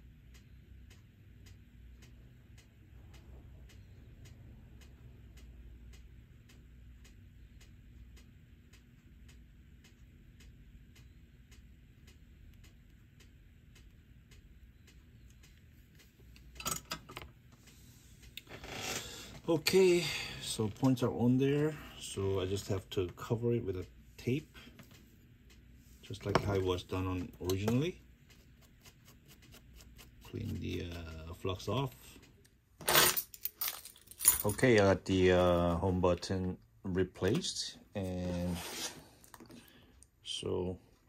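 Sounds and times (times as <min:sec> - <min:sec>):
steady ticking: 0:00.0 - 0:16.6, 0:19.4 - 0:32.6.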